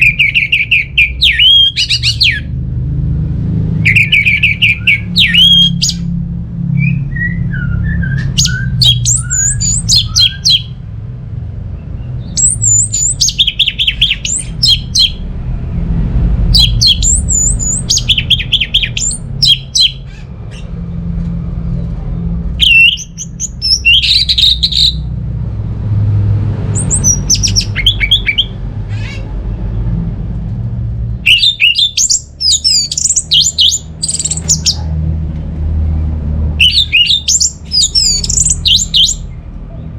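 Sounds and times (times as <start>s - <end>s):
steady low hum: 0.0s - 31.3s
thrush singing: 3.6s - 6.2s, 12.2s - 20.7s, 26.1s - 29.4s, 36.6s - 39.4s.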